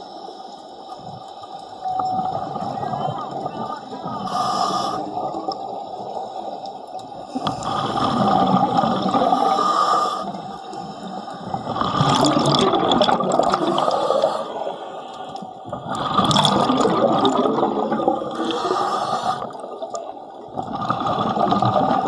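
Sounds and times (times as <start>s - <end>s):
underwater bubbling from exhaled breath: 0.9s - 22.0s.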